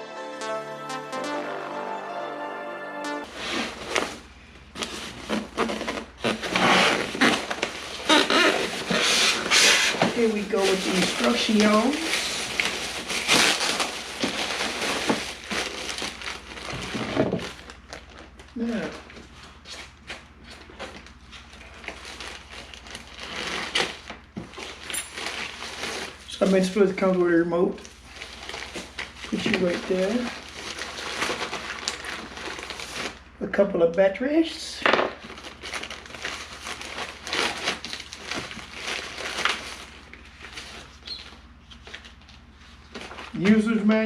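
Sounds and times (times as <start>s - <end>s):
packaging rustling and crinkling: 3.3s - 33.4s, 35.0s - 44.0s.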